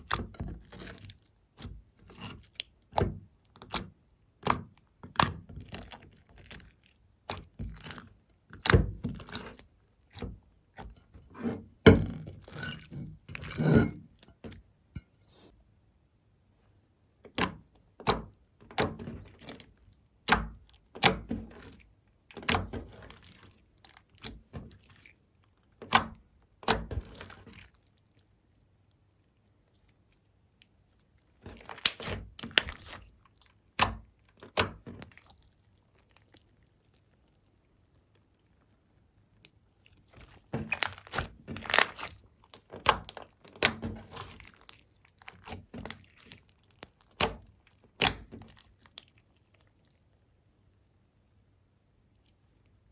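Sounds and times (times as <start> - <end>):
slime clicking and popping: 31.6 - 33.1, 40.2 - 49.0.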